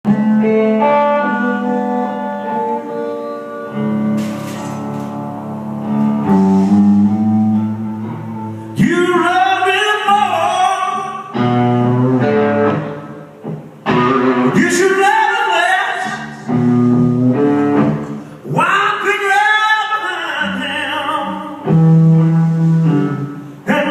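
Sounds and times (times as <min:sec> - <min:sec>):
blues guitar and bass: 0:00.1 - 0:23.9
man singing with vibrato: 0:08.6 - 0:11.6, 0:13.9 - 0:16.6, 0:18.3 - 0:21.9, 0:23.6 - 0:23.9.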